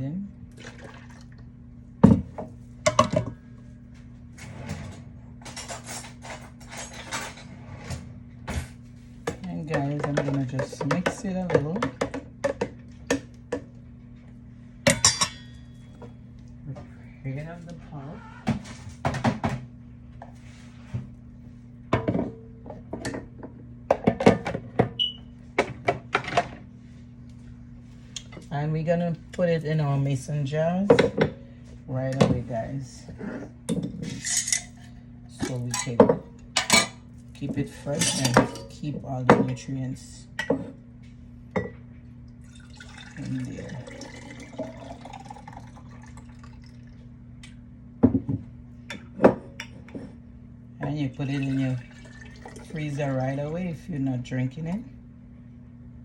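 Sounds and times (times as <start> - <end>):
steady low hum: 0.0 - 56.0
dishes and utensils clinking: 14.9 - 15.9, 37.8 - 39.5
kitchenware rasping: 33.0 - 38.8
kitchenware knocks and clinks: 37.9 - 38.7.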